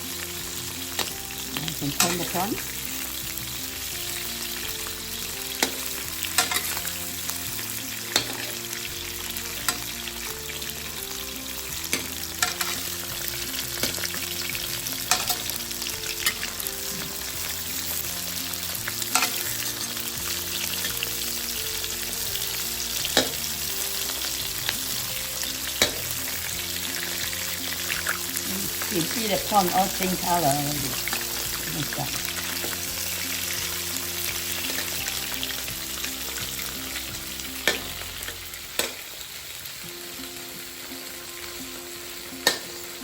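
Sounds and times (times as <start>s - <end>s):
prawns sizzling in hot oil: 0.0s - 43.0s
spatula clicking against wok: 42.4s - 42.7s.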